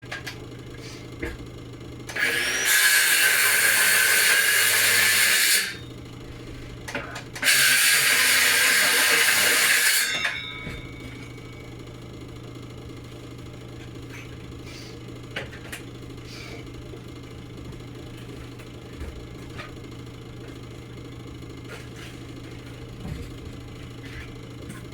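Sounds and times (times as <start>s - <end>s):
power tool running: 2.0s - 11.9s
steady low hum: 5.8s - 7.4s, 10.0s - 24.9s.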